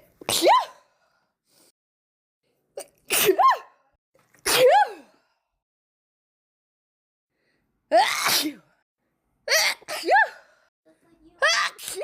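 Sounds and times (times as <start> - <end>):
woman sneezing: 0.2 - 0.8, 3.1 - 3.7, 4.4 - 5.1, 8.0 - 8.7, 9.5 - 10.4.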